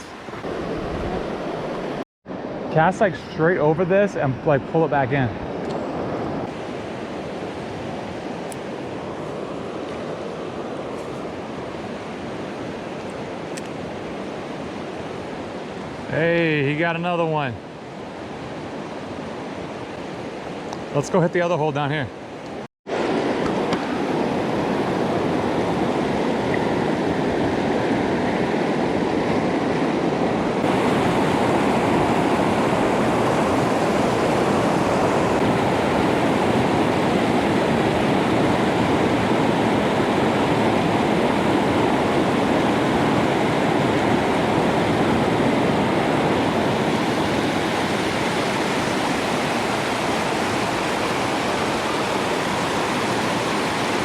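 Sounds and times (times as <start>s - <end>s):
river rushing: 0.0s - 54.0s.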